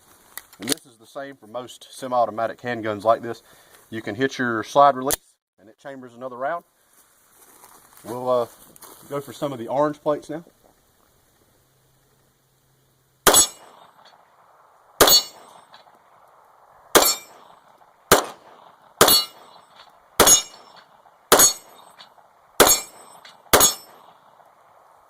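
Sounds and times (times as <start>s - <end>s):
pistol shots: 13.2s - 14.2s, 15.0s - 15.8s, 16.9s - 24.4s
metal plate targets ringing: 13.3s - 13.9s, 15.0s - 15.8s, 17.0s - 24.2s.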